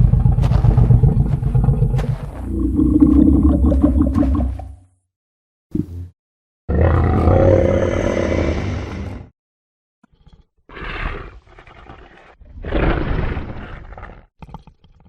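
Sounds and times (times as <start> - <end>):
deep dinosaur roar: 0.0 - 4.8, 6.7 - 9.3.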